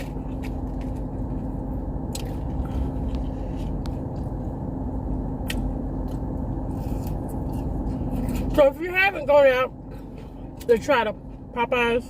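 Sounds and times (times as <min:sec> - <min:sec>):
person chewing crunchy food: 0:00.0 - 0:08.6
car cabin hum: 0:00.0 - 0:12.0.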